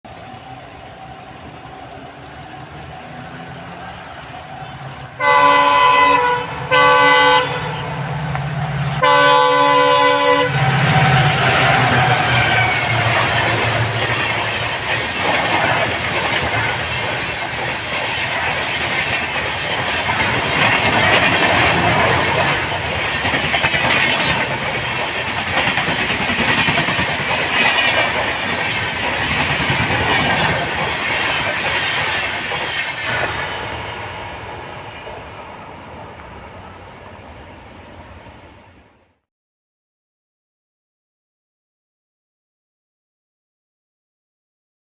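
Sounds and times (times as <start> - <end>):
train rushing past: 0.1 - 39.2
locomotive air horn blasts: 5.2 - 8.0, 9.0 - 10.8
wheels clacking over rails: 10.8 - 35.9.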